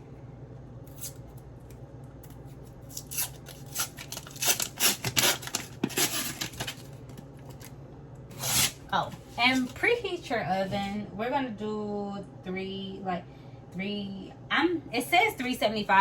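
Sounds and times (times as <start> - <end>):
packaging rustling and crinkling: 3.0 - 7.8.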